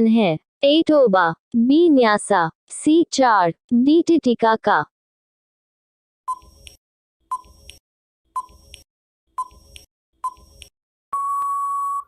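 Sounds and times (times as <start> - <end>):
long steady beep: 11.1 - 12.0
countdown timer short beeps: 11.2 - 12.0.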